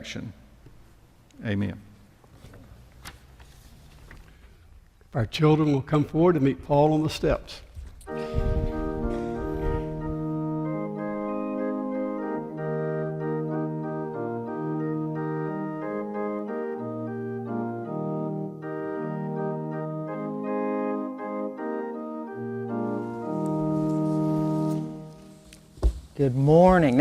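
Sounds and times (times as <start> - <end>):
organ playing slow chords: 8.0 - 27.0.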